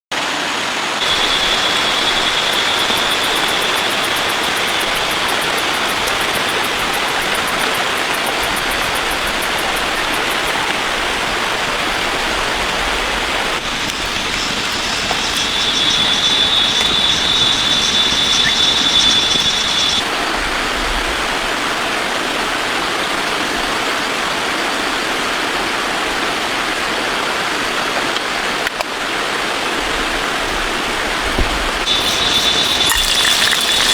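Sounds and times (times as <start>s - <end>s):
heavy rain falling: 0.2s - 33.9s
thin high whine: 1.0s - 7.0s, 31.9s - 33.9s.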